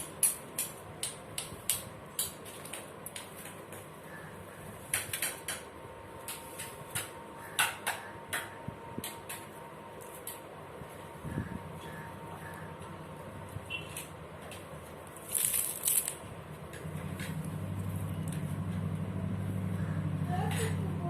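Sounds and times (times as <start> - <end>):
herb stems snapping: 13.9 - 16.2.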